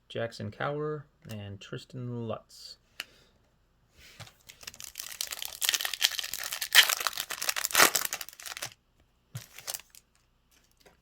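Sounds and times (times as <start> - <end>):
foil wrapper crinkling and tearing: 4.4 - 8.8, 9.4 - 10.9.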